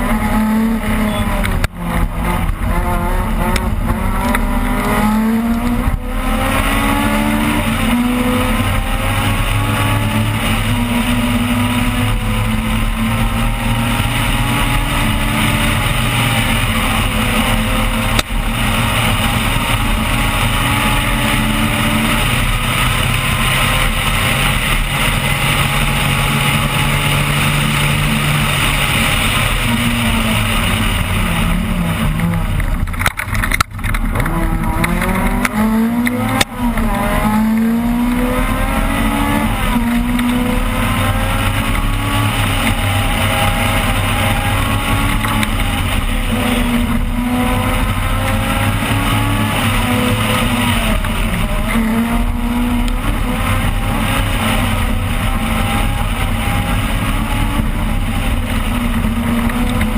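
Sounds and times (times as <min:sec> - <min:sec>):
rally car engine revving: 0:00.0 - 0:59.9.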